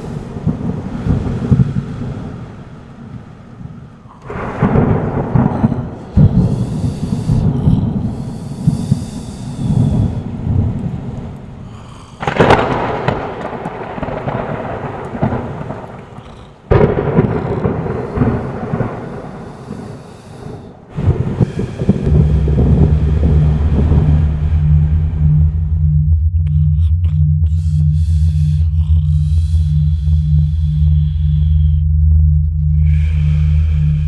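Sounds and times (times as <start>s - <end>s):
low steady hum: 0.0s - 13.2s, 21.0s - 34.0s
thunder-like rumbles: 0.0s - 34.0s.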